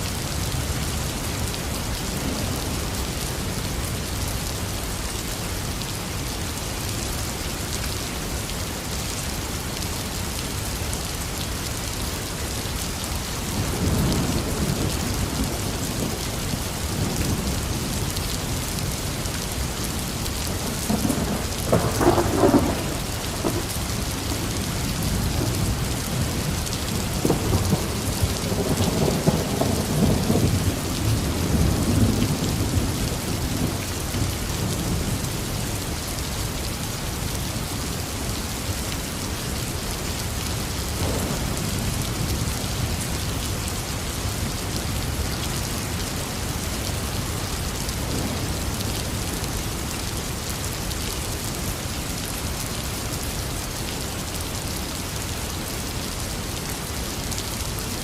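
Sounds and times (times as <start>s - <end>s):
heavy rain falling: 0.0s - 58.0s
rolling thunder: 20.6s - 33.8s.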